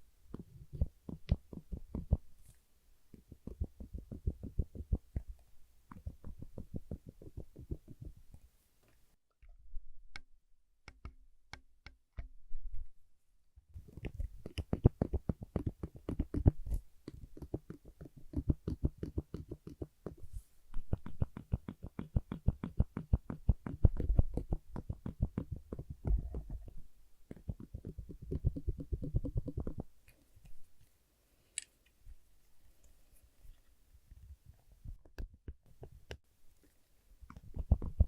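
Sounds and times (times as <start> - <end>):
fast tapping and clicking: 0.3 - 2.3, 3.1 - 8.4, 13.8 - 20.2, 20.8 - 29.9, 37.3 - 38.0.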